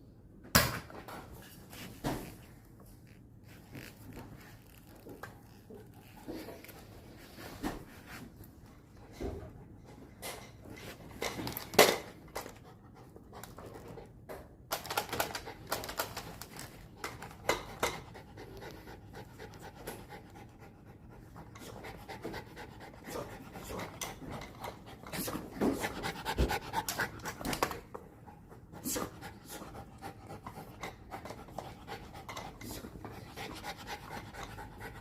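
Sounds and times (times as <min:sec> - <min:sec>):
dog panting: 0:17.0 - 0:35.0.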